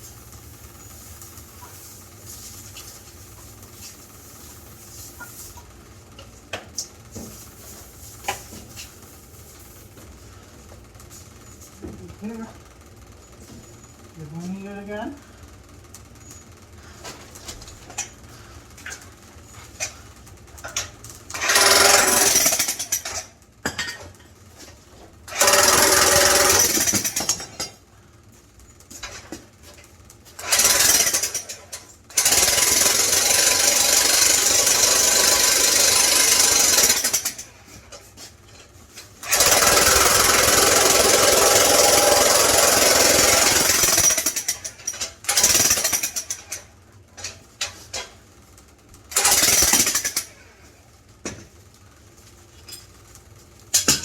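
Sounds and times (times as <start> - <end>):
jackhammer chiselling into metal: 20.7 - 23.3, 25.3 - 27.8, 30.4 - 37.5, 39.2 - 46.7, 49.1 - 50.4.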